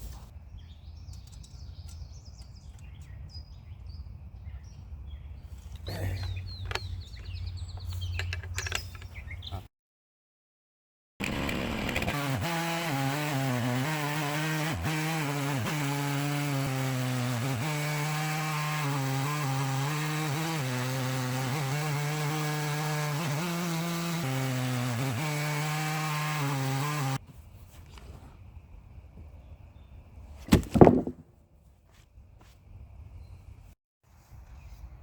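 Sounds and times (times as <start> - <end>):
chainsaw cutting log: 11.2 - 27.2, 30.5 - 31.2.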